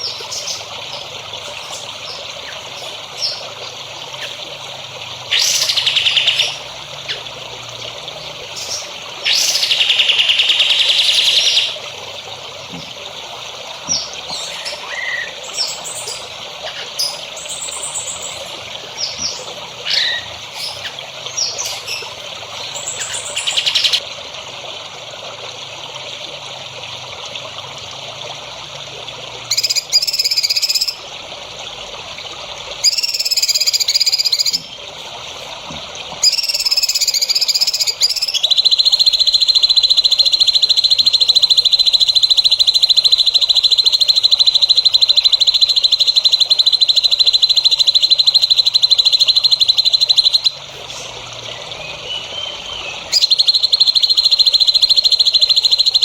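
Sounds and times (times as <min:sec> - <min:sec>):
songbird chirps and song: 0:05.2 - 0:11.9, 0:13.7 - 0:24.0, 0:36.2 - 0:56.0
fast pulsing bird trill: 0:05.3 - 0:07.3, 0:08.6 - 0:11.8, 0:14.3 - 0:24.0, 0:29.5 - 0:31.0, 0:32.8 - 0:34.6, 0:36.2 - 0:50.6, 0:52.0 - 0:56.0.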